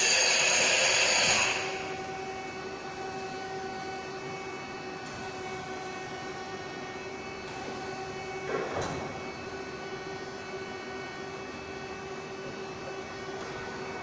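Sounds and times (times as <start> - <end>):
machine hum and whine: 0.0 - 14.0.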